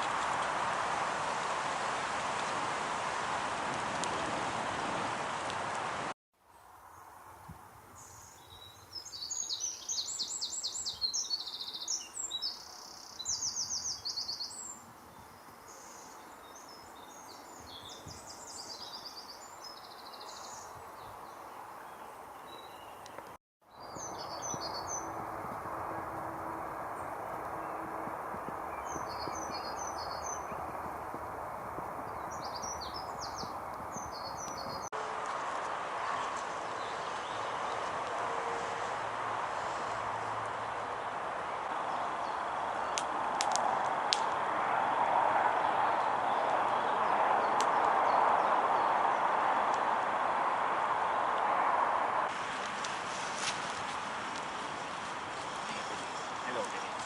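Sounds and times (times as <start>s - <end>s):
outdoor hiss: 0.0s - 13.9s
birds chirping and trilling: 8.0s - 34.9s.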